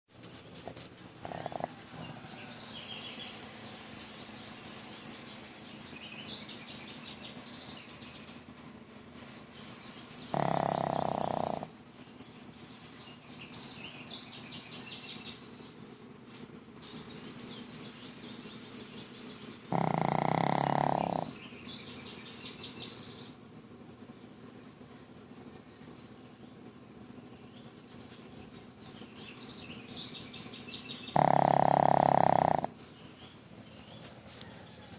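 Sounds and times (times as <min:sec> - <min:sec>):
dog snoring: 0:01.2 - 0:03.7, 0:10.1 - 0:11.8, 0:19.4 - 0:21.4, 0:30.9 - 0:32.8.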